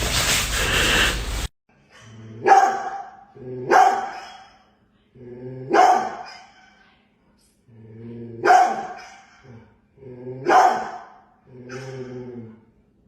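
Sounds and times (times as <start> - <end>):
dog barking: 1.9 - 4.7, 5.7 - 6.7, 8.4 - 9.5, 10.4 - 12.2.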